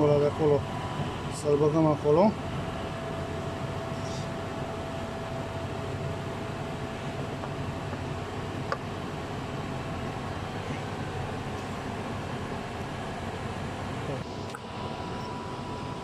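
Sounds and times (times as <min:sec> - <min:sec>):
workshop hum: 0:00.0 - 0:16.0
faint steady tone: 0:14.1 - 0:16.0.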